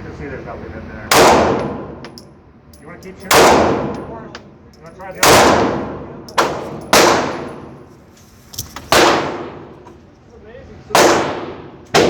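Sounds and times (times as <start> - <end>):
pistol shots echoing: 1.1 - 2.0, 3.2 - 4.0, 5.2 - 7.8, 8.9 - 9.7, 11.0 - 12.0.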